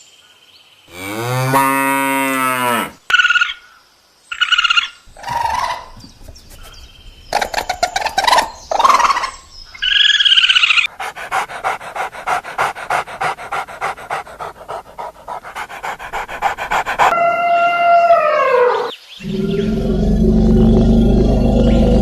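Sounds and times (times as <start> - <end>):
dog panting: 5.1 - 9.4, 10.8 - 17.2
low musical drone: 19.2 - 22.0.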